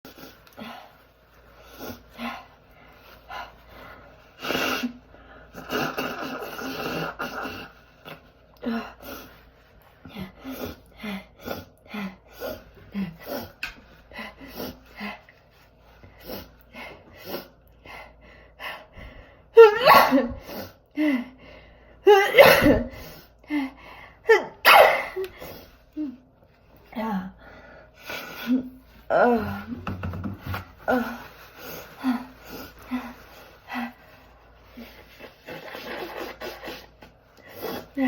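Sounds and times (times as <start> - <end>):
woman sneezing: 19.6 - 20.7, 22.1 - 23.1, 24.3 - 25.3
sniffs: 31.0 - 38.0.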